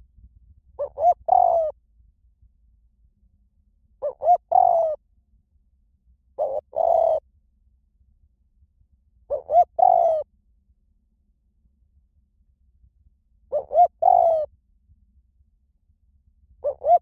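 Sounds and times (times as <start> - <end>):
dove cooing: 0.8 - 1.8, 4.0 - 5.0, 6.4 - 7.2, 9.3 - 10.3, 13.5 - 14.5, 16.6 - 17.0.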